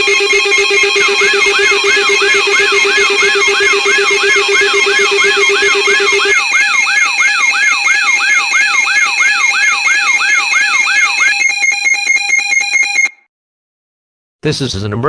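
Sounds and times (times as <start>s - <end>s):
pulsing low tone: 0.0s - 9.3s
steady electronic tones: 0.0s - 13.1s
rapid alarm beeping: 0.0s - 13.2s
siren-like sweeping alarm tone: 0.0s - 13.2s.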